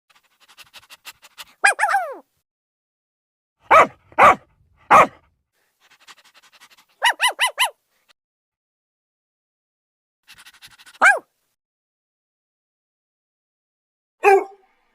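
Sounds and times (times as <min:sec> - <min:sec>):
dog barking and yipping: 0:00.4 - 0:02.2, 0:03.7 - 0:05.2, 0:05.9 - 0:07.8, 0:10.3 - 0:11.3, 0:14.2 - 0:14.6.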